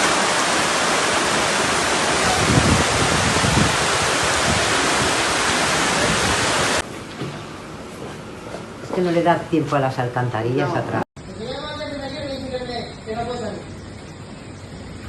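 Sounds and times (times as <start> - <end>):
floodwater rushing: 0.0 - 6.8.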